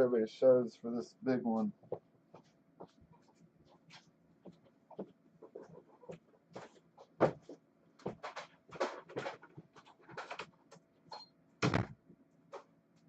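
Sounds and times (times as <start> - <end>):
objects knocking and clattering: 6.6 - 10.6
loud thump: 11.6 - 12.0.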